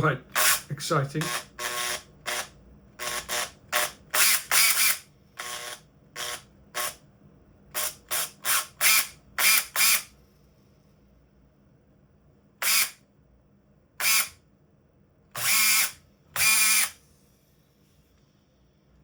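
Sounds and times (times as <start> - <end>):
cordless drill motor bursts: 0.4 - 7.0, 7.7 - 10.2, 12.6 - 13.0, 14.0 - 14.4, 15.4 - 17.1.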